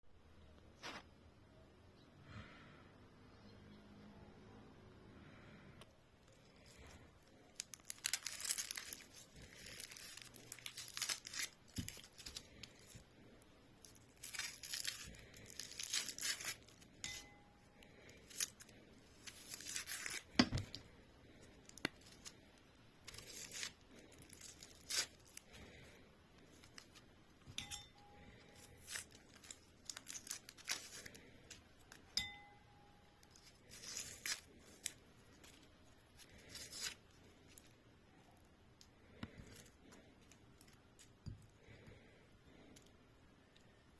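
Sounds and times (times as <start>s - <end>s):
crinkly material tearing: 6.3s - 17.0s, 17.8s - 22.4s, 23.0s - 27.0s, 28.2s - 32.1s, 33.2s - 37.8s
light ringing clinks: 13.9s - 18.6s, 27.5s - 31.0s, 32.0s - 34.4s.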